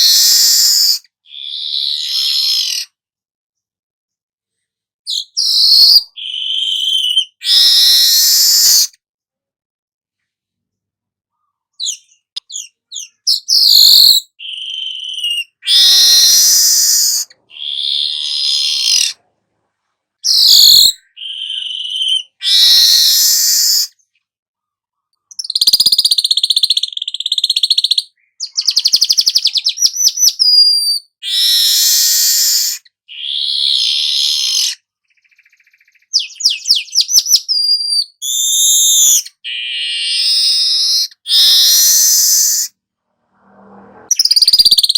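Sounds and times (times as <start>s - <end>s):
weaver bird song: 5.1s - 9.0s, 10.7s - 19.2s, 20.2s - 42.7s, 44.1s - 44.9s.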